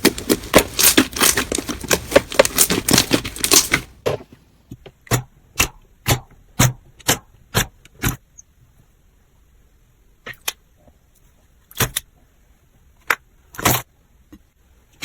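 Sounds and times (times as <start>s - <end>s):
sticky slime crackles and pops: 0.0s - 3.9s
slime squishing: 0.0s - 4.2s.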